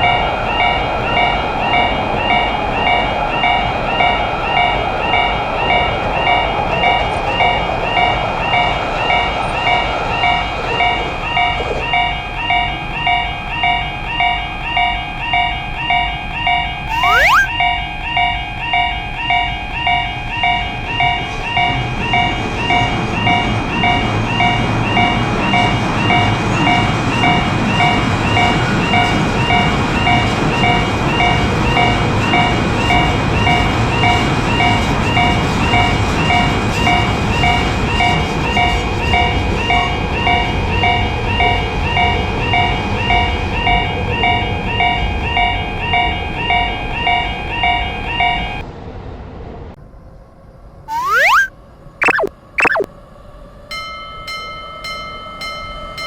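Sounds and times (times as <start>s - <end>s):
level-crossing warning bell: 53.7s - 56.0s.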